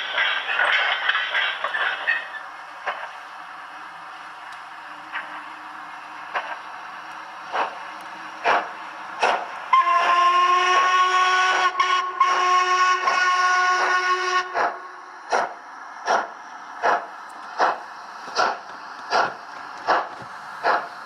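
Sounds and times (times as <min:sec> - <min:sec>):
steam exhaust chuffs: 0:05.0 - 0:21.0
steam whistle: 0:09.7 - 0:14.6.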